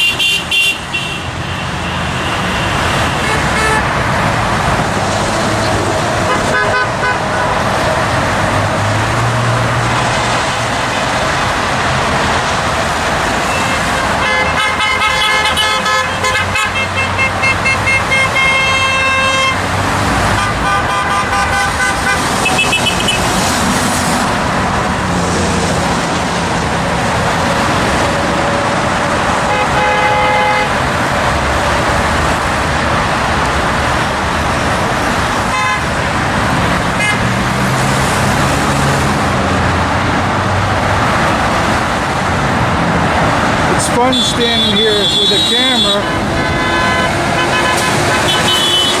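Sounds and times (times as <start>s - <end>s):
car horns honking: 0.0s - 4.2s, 6.1s - 7.8s, 13.3s - 24.3s, 29.3s - 31.0s, 35.4s - 36.2s, 36.9s - 37.6s, 43.7s - 49.0s
highway traffic passing: 0.0s - 49.0s.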